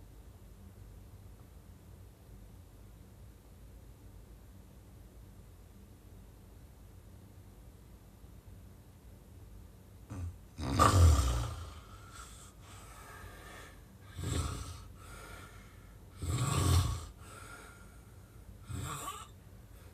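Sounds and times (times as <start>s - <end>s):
person snoring loudly: 10.1s - 15.3s, 16.1s - 17.6s, 18.6s - 19.3s
soft breath: 11.6s - 16.2s, 16.8s - 19.9s.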